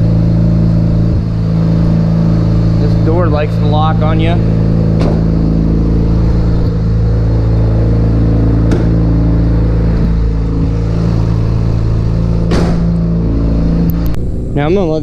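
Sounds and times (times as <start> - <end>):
rotary engine idling: 0.0 - 15.0
thump: 5.0 - 5.4, 8.6 - 9.2, 12.4 - 13.1.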